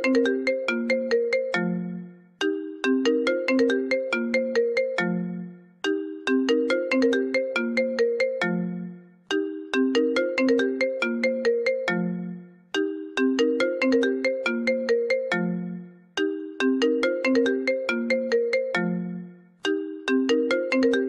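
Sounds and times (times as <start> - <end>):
phone ringtone melody: 0.0 - 21.0.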